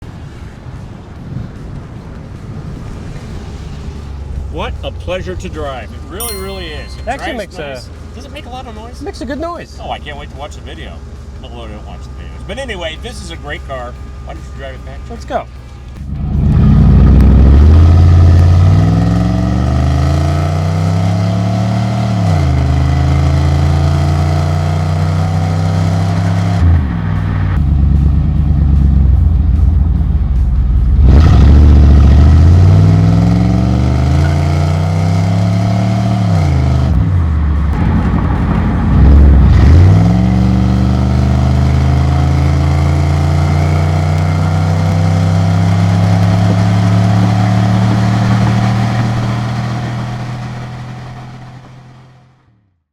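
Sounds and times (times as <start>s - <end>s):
car engine accelerating: 12.5s - 52.4s.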